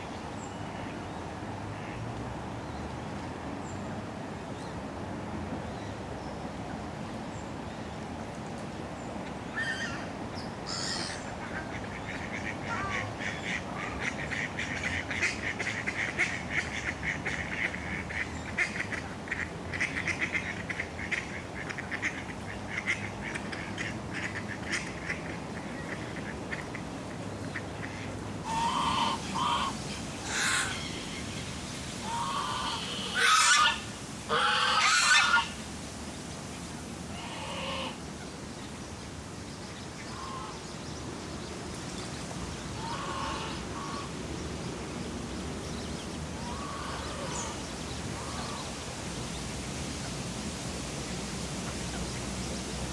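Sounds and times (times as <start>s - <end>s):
steady breeze: 0.0s - 52.9s
duck quacks: 27.9s - 29.7s, 32.1s - 35.5s, 42.8s - 44.0s
goose honks: 28.5s - 29.7s, 32.1s - 35.5s, 42.8s - 44.0s.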